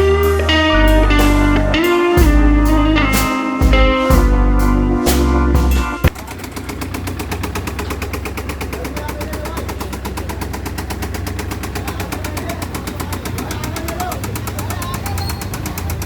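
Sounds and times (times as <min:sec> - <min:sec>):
engine idling with rapid clatter: 0:06.1 - 0:16.0.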